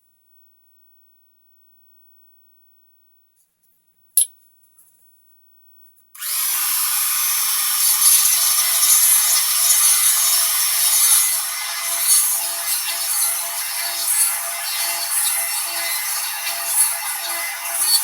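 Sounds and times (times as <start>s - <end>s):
rotary tool grinding: 6.2s - 18.0s.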